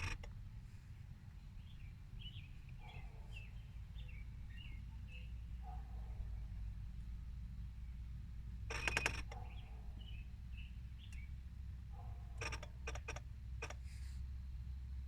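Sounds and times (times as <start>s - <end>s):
birds chirping: 1.0s - 12.6s.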